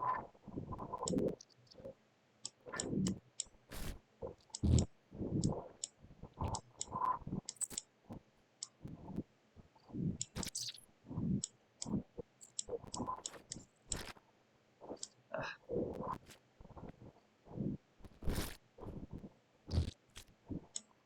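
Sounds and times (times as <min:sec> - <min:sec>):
sharp high clicks: 0:04.6 - 0:05.6, 0:07.5 - 0:07.8.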